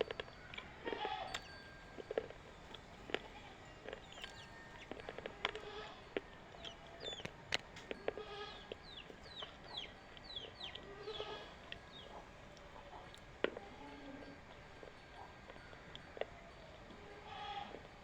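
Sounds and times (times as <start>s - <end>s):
chickens chirping: 0.0s - 17.8s
crunching of chewing: 0.0s - 18.0s.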